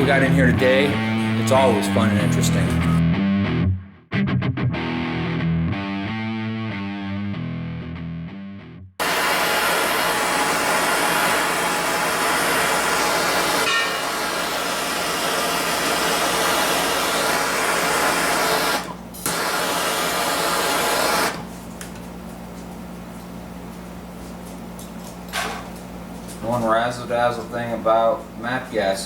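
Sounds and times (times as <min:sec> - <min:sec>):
gas torch hissing: 0:09.0 - 0:21.5.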